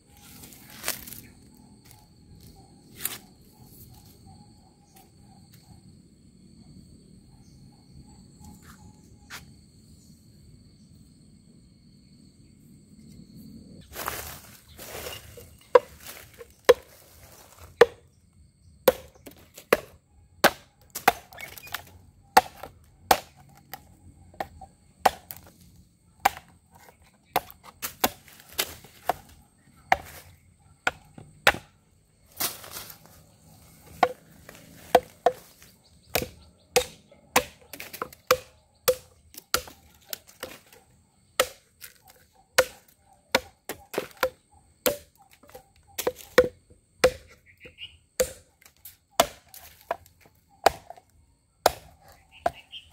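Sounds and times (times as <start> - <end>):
knife chopping into wood: 15.0 - 18.0, 18.9 - 21.8, 22.4 - 23.8, 24.4 - 25.5, 26.2 - 31.8, 33.9 - 40.8, 41.4 - 47.4, 48.2 - 51.0, 51.6 - 52.7.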